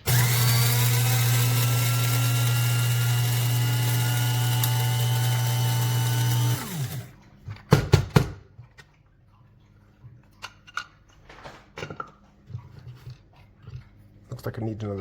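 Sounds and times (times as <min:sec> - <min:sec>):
electric grinder running: 0:00.0 - 0:07.1.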